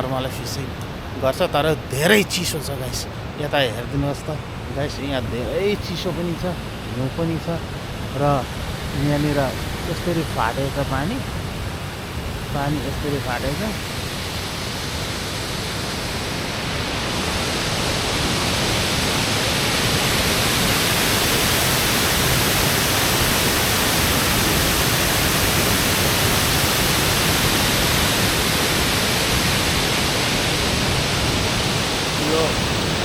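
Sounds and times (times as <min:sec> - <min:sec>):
river water rushing: 0:00.4 - 0:07.0.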